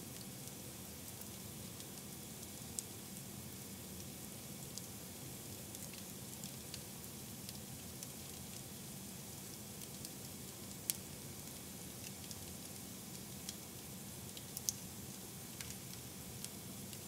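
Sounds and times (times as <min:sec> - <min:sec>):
log fire crackling: 0:09.8 - 0:13.6.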